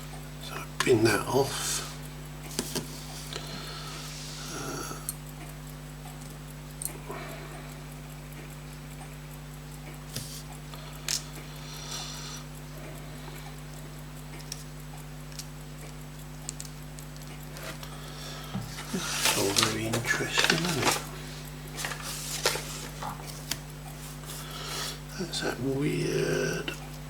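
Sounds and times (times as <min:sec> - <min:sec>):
low electrical hum: 0:00.0 - 0:27.0
small tools tapping watch parts: 0:13.4 - 0:23.7.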